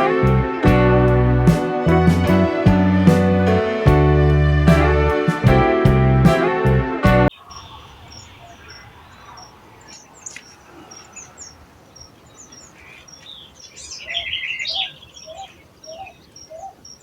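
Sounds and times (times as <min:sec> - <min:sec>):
bird trilling song: 0:07.3 - 0:17.0
birds chirping and calling: 0:07.3 - 0:17.0.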